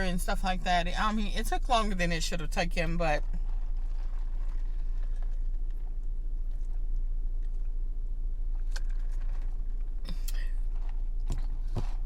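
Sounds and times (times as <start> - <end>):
low electrical hum: 0.0 - 12.0
chewing food: 3.4 - 7.8.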